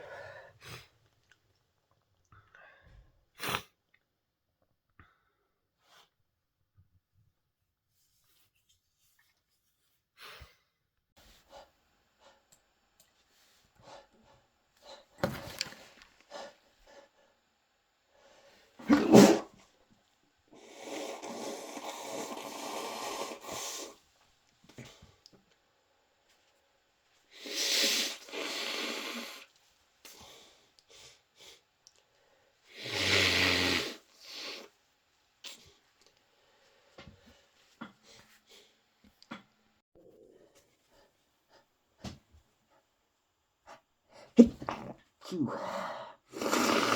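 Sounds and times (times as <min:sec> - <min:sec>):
person sneezing: 0:18.8 - 0:19.6, 0:44.4 - 0:45.5.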